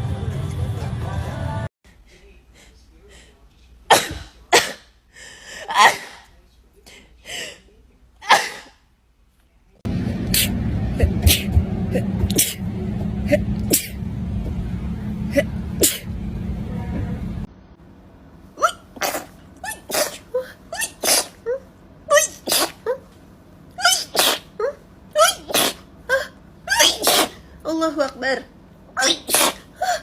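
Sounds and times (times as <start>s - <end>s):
person sneezing: 3.9s - 4.9s, 5.6s - 6.3s, 8.2s - 8.8s, 10.3s - 10.5s, 11.1s - 12.6s, 13.3s - 14.0s, 15.3s - 16.1s, 18.6s - 23.0s, 23.8s - 27.5s, 29.0s - 30.0s
steady low hum: 9.7s - 30.0s.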